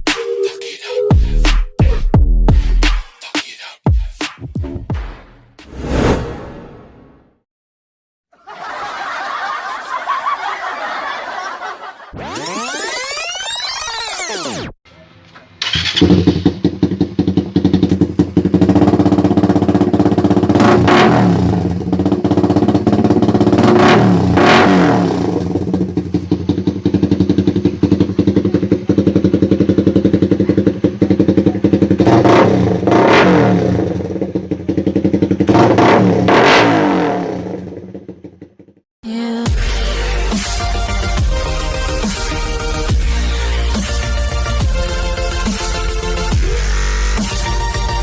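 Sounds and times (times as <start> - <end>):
motorcycle engine idling and revving: 15.4 - 38.9, 39.5 - 48.0.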